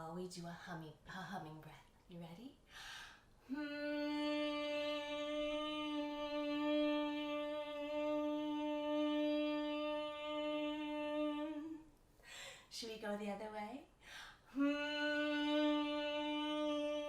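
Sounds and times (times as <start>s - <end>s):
woman humming a long note: 3.5s - 11.8s, 14.6s - 17.0s.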